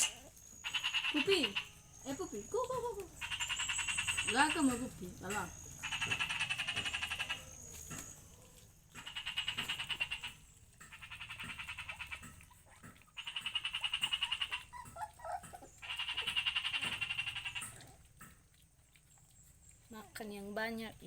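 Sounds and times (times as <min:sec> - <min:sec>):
frog trilling: 0:00.0 - 0:02.3, 0:03.2 - 0:04.9, 0:05.6 - 0:07.6, 0:09.0 - 0:10.4, 0:11.0 - 0:12.4, 0:13.2 - 0:17.8.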